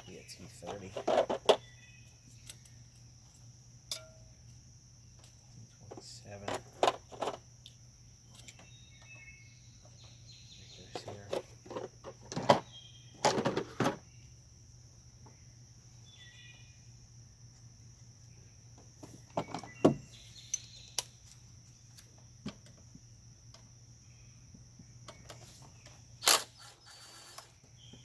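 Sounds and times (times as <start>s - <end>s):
steady low hum: 0.0s - 28.0s
metallic clinks of hand tools: 3.9s - 4.3s.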